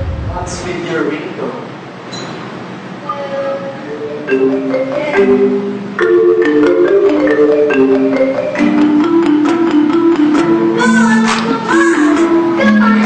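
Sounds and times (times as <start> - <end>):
marimba phone ringtone: 3.9 - 11.2.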